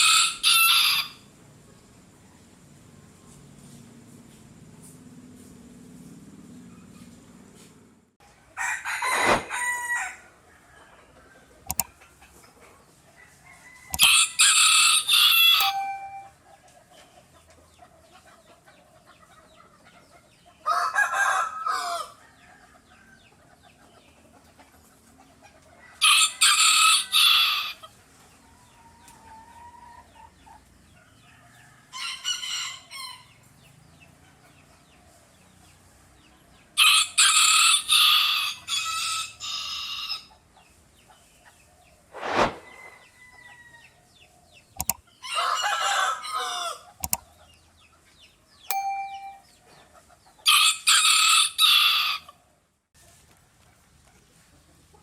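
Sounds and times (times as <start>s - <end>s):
rooster crowing: 8.6s - 10.2s, 20.7s - 22.2s.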